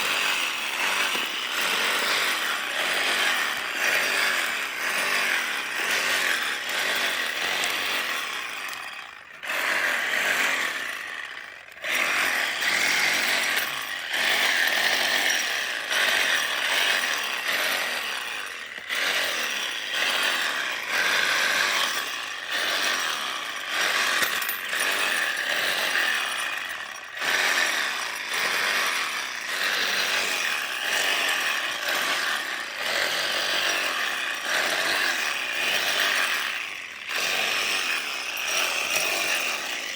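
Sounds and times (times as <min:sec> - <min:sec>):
reciprocating saw cutting: 0:00.0 - 0:39.9.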